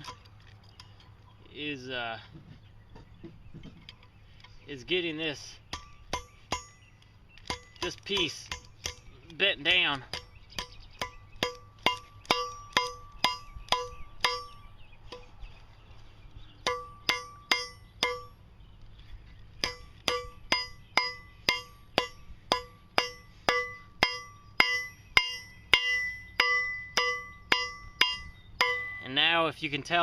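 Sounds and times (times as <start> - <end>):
hammer ringing on steel anvil: 5.7 - 6.8, 10.1 - 14.6, 16.6 - 18.4, 19.6 - 29.2.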